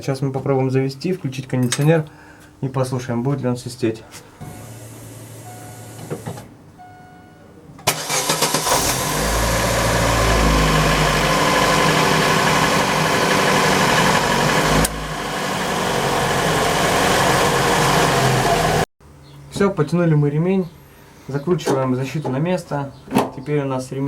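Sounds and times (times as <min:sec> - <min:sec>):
car engine starting and idling: 0:04.4 - 0:06.4, 0:07.8 - 0:18.9
faint short beeps: 0:05.4 - 0:06.0, 0:06.8 - 0:07.5.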